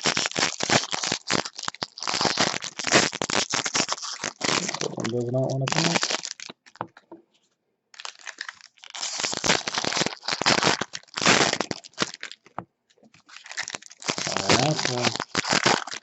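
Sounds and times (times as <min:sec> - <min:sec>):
plastic wrapper crinkling and tearing: 0:00.0 - 0:07.0, 0:08.0 - 0:16.0.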